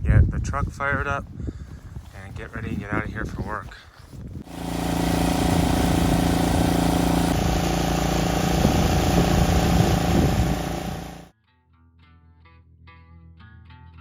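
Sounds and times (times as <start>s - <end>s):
engine running: 4.4s - 11.3s.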